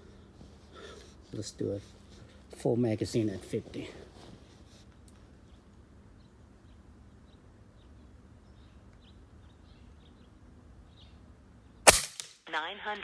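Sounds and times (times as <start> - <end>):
air rifle shot: 11.9 - 12.4.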